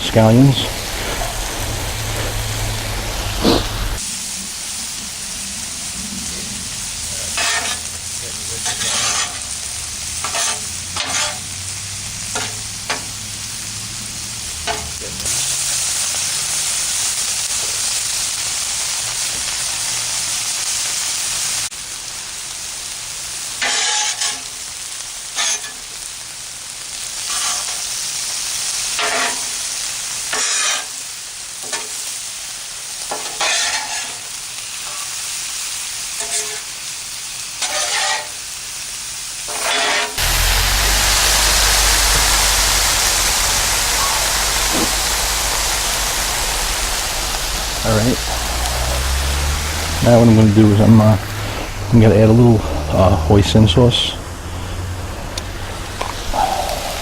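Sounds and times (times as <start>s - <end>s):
vegetables sizzling on griddle: 0.1s - 57.0s
spatula scraping and tapping griddle: 7.3s - 8.0s, 8.6s - 9.6s, 10.2s - 11.5s, 12.3s - 13.1s, 14.7s - 15.0s, 23.6s - 24.5s, 25.4s - 25.8s, 27.3s - 27.8s, 29.0s - 29.5s, 30.3s - 31.0s, 31.6s - 32.0s, 33.1s - 35.1s, 36.2s - 36.7s, 37.6s - 38.4s, 39.5s - 40.2s.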